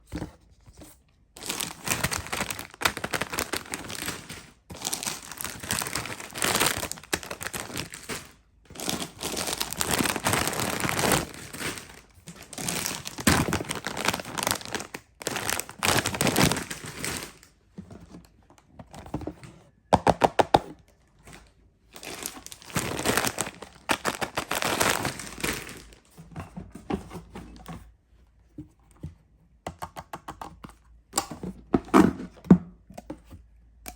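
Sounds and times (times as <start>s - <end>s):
packaging crinkling and tearing: 1.4s - 17.5s, 21.4s - 26.1s.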